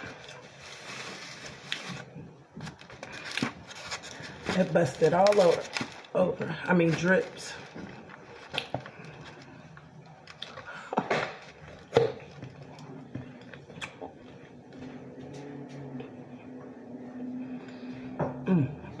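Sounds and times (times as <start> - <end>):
faint steady hum: 0.0 - 19.0
person chewing: 7.7 - 15.0.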